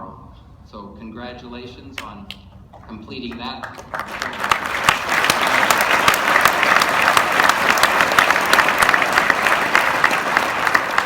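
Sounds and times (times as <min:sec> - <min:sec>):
audience applauding: 0:03.3 - 0:11.0.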